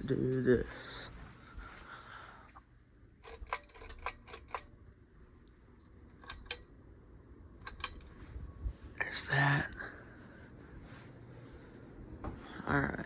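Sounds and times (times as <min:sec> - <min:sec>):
pull-chain switch clicks: 0:07.6 - 0:08.1.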